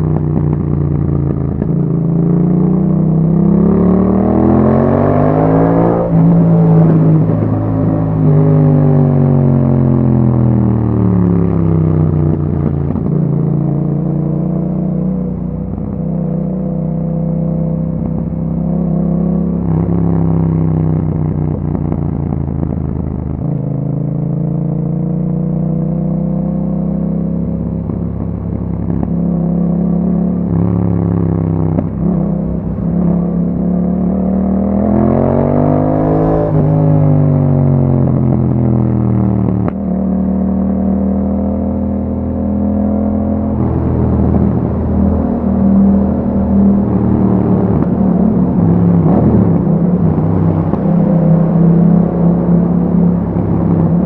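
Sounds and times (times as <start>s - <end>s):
motorcycle engine revving: 0.0s - 54.0s.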